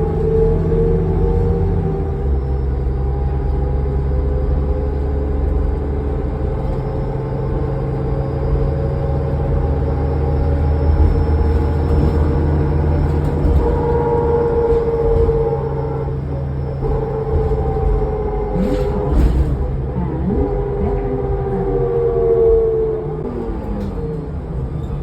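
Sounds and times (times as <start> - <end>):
bus engine drone: 0.0 - 25.0.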